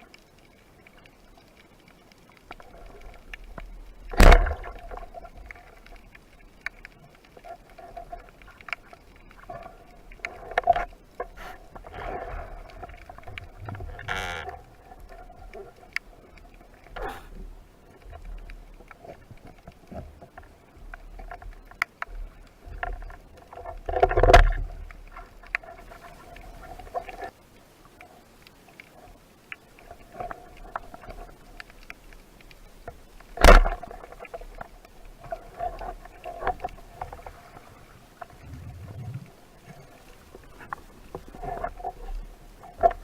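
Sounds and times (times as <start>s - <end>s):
faint steady underwater hum: 0.0s - 43.0s
underwater clicks and crackles: 0.0s - 43.0s
underwater rushing burst: 37.6s - 40.2s.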